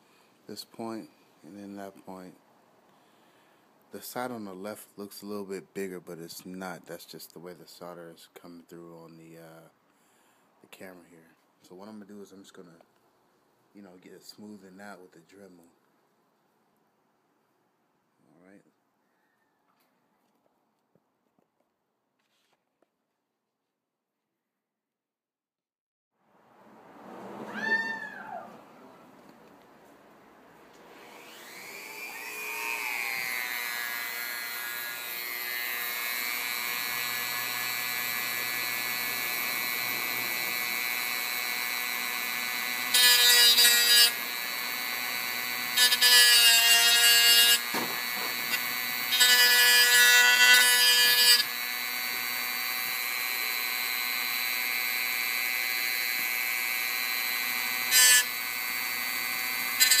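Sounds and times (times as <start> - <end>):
rotary tool whine: 30.9 - 60.0
rotary tool grinding metal: 31.1 - 60.0.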